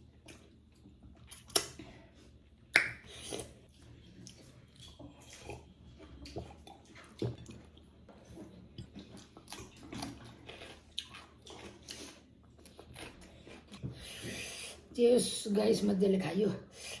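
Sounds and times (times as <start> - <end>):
person chewing food: 0.0 - 14.8
wet mouth sounds and clicks: 1.3 - 1.8, 2.7 - 3.5.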